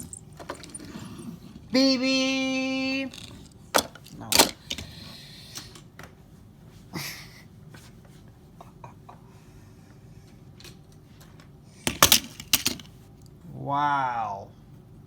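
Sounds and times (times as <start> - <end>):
small objects clicking and knocking: 0.0 - 1.0, 3.0 - 4.9, 11.9 - 12.9.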